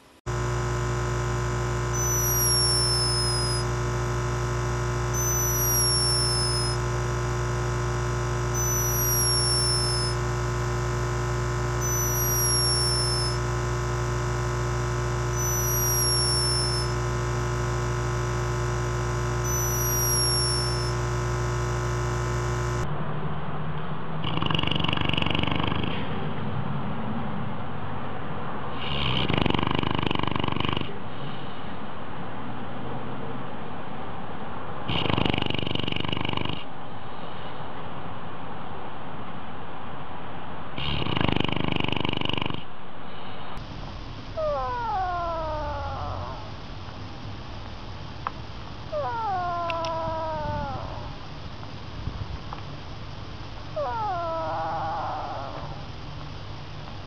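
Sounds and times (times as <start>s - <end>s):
loud steady hum: 0.0s - 29.5s, 42.6s - 57.0s
animal snoring with whistle: 1.4s - 22.8s, 24.2s - 26.2s, 28.7s - 31.0s, 34.9s - 36.8s, 40.7s - 42.7s, 44.4s - 46.6s, 48.9s - 51.2s, 53.8s - 55.9s.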